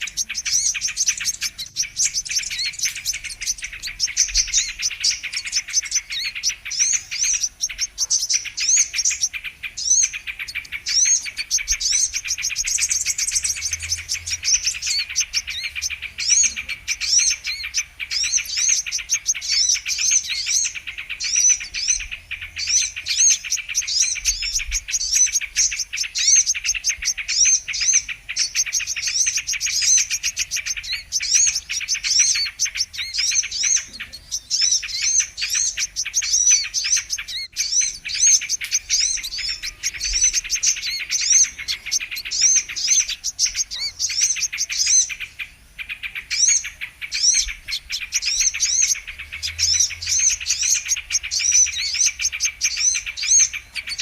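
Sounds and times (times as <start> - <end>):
bird song chirps and twitters: 0.0 - 54.0.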